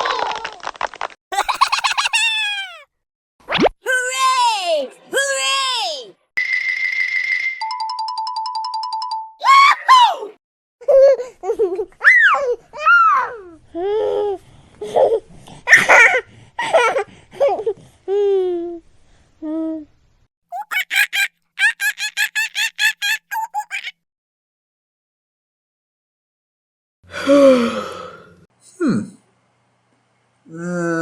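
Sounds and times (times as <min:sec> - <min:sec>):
person laughing: 0:01.3 - 0:02.8, 0:20.5 - 0:24.0
high-pitched vocal squeals: 0:01.4 - 0:02.9, 0:20.5 - 0:23.9.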